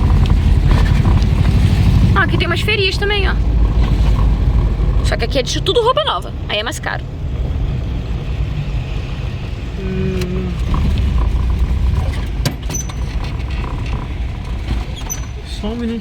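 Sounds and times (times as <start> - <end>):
van engine and road rumble: 0.0 - 16.0.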